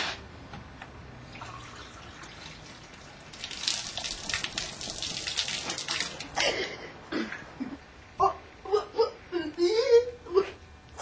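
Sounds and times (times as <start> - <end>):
liquid running and splashing: 1.4 - 6.4.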